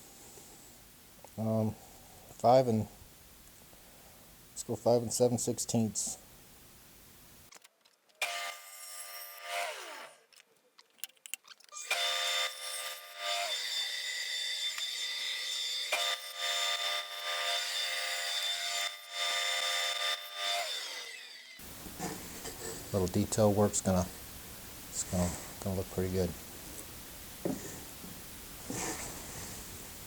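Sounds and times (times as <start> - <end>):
electric saw cutting wood: 8.2 - 10.3, 11.8 - 22.8.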